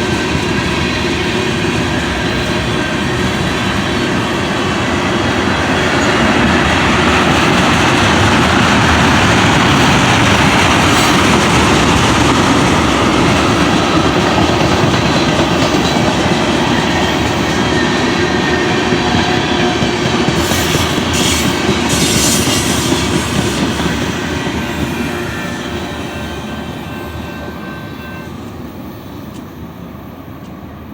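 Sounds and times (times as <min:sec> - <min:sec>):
freight train wheels clacking: 0:00.0 - 0:30.9.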